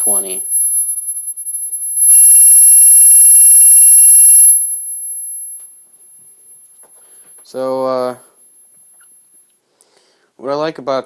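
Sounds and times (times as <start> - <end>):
loud buzzy electronic tone: 0.0 - 5.6
high-pitched test tone: 0.0 - 5.8.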